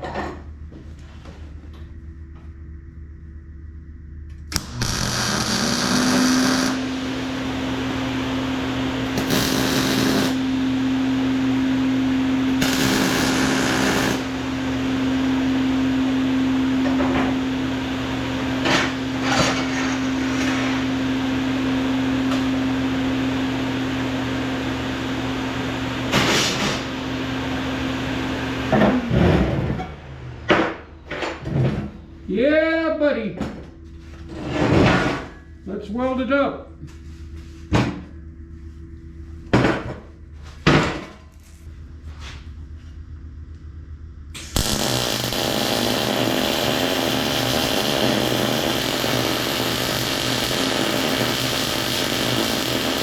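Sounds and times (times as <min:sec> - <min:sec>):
power tool motor running: 0:04.5 - 0:15.4, 0:44.4 - 0:53.0
power tool cutting steel: 0:04.6 - 0:07.3, 0:09.0 - 0:10.5, 0:12.5 - 0:14.5, 0:44.4 - 0:53.0.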